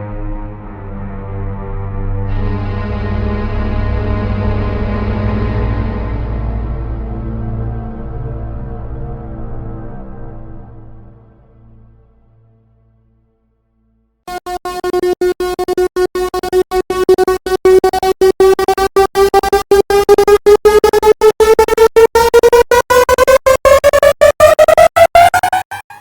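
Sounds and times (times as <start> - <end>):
stuttering electronic riser tone: 14.3 - 26.0.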